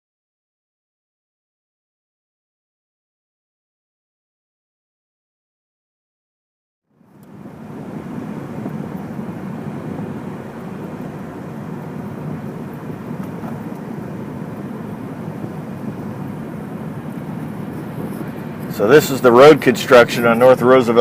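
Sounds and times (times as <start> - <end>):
vehicle road noise rumble: 6.9 - 21.0.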